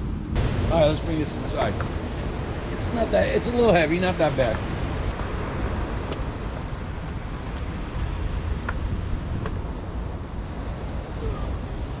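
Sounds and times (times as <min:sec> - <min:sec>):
wind buffeting microphone: 0:00.0 - 0:12.0.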